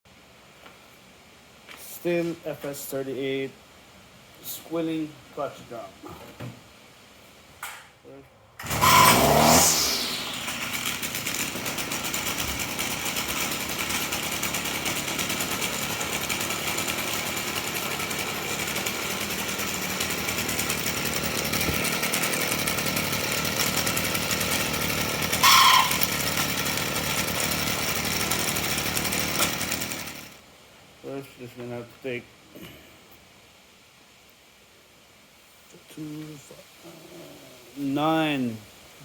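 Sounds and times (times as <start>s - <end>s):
clutch drum squeal: 8.6s - 10.7s, 25.4s - 26.2s
string trimmer engine idling: 8.6s - 30.4s.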